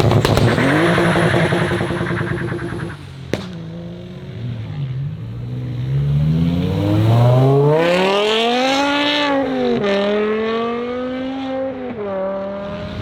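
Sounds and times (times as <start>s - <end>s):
car engine accelerating hard: 0.0s - 13.0s.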